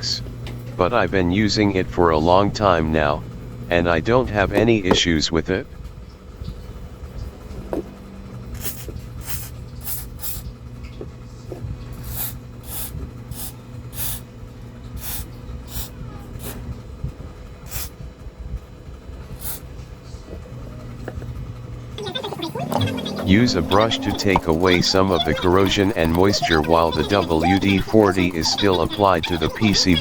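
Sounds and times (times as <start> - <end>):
low background hum: 0.0 - 30.0
aerosol can spraying: 8.6 - 10.4, 12.0 - 14.2, 15.0 - 16.6, 17.7 - 17.9, 19.4 - 19.6.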